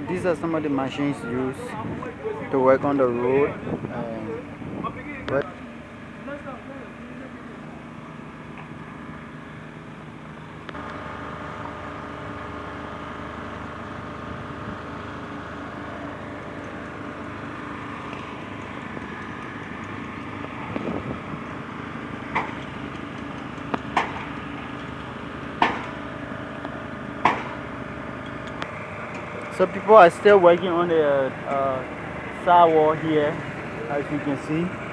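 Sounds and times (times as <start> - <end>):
construction machinery engine running: 0.0 - 34.9
sharp knocks: 22.3 - 24.4, 25.6 - 26.0, 27.2 - 27.6.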